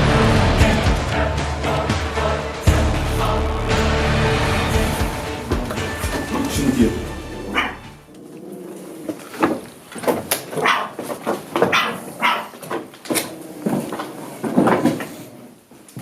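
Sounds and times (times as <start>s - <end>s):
dog barking: 7.5s - 7.9s, 10.6s - 12.7s.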